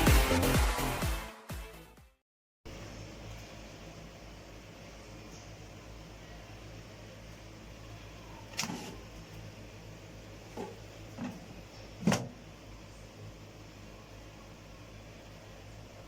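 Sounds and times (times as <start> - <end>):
low steady hum: 2.7 - 16.0.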